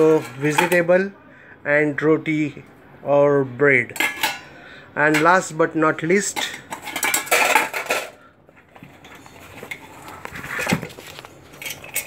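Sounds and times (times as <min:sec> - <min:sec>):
rustling and scraping: 0:06.4 - 0:12.0.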